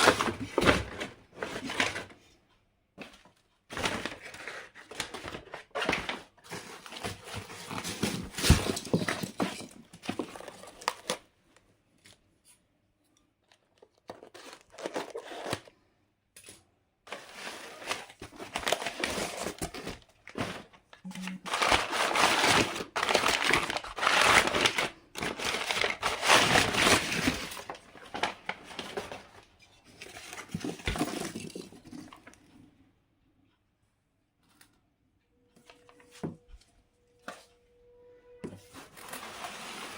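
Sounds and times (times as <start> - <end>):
packaging crinkling and tearing: 0.0 - 2.0, 13.6 - 15.7, 17.1 - 29.4.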